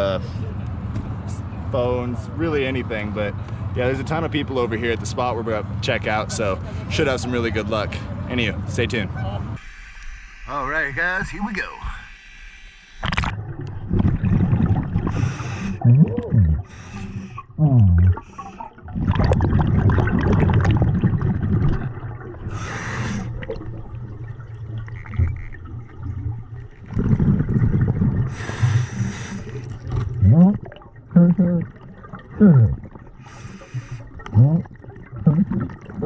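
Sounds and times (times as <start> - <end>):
exhaled regulator bubbles: 9.6 - 36.0
water gurgling: 9.6 - 36.0.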